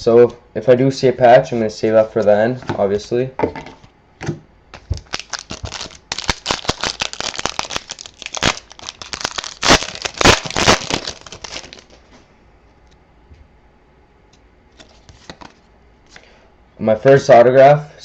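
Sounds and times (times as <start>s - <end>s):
wrapper being torn and crinkled: 4.8s - 12.1s.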